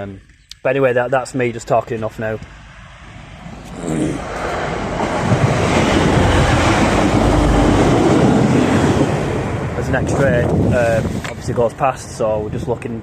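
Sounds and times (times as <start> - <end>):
passing train wheels rumbling: 2.2 - 11.5.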